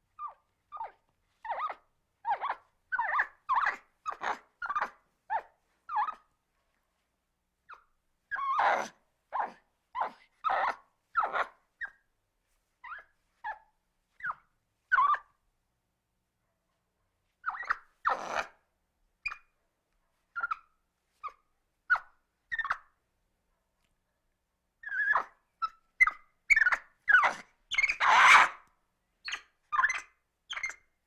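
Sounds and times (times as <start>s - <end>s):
monkey calling: 27.2s - 28.5s.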